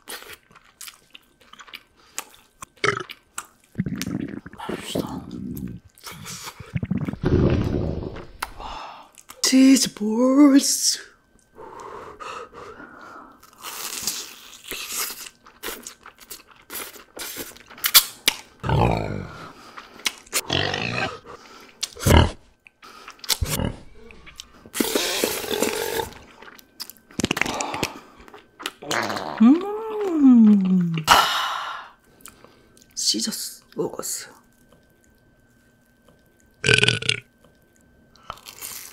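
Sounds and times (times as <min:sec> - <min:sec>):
crunching and chewing snacks: 0:00.0 - 0:04.8, 0:13.3 - 0:31.1, 0:34.3 - 0:38.9.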